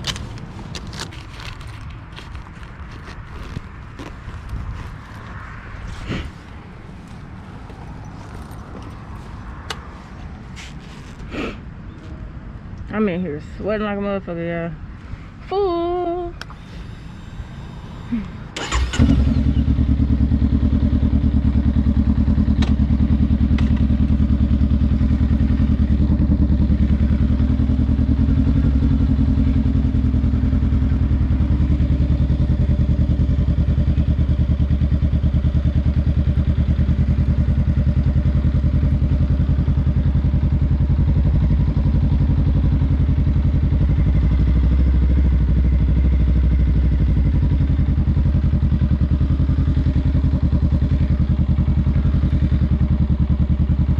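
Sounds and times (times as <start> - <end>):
motorcycle engine idling: 16.4 - 53.9.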